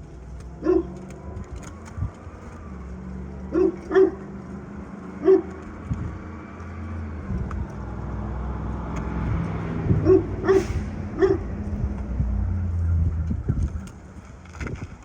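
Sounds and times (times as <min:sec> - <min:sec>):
steady low rumble: 0:00.0 - 0:15.0
dog barking: 0:00.6 - 0:01.0, 0:03.5 - 0:04.3, 0:05.2 - 0:05.6, 0:10.0 - 0:11.5.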